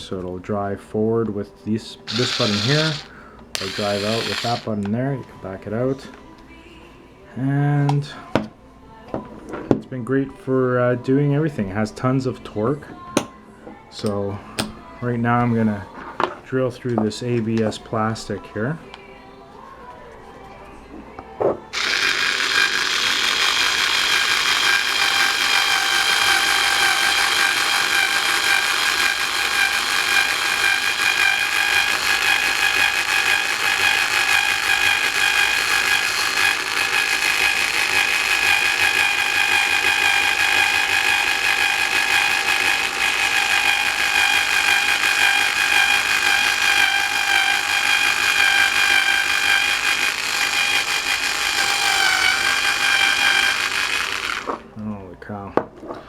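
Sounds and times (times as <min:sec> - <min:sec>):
power screwdriver whining: 0:02.1 - 0:04.8, 0:21.8 - 0:54.7.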